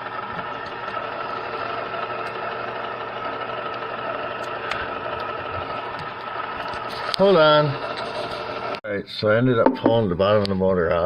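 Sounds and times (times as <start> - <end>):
turntable motor whine: 0.0 - 8.8.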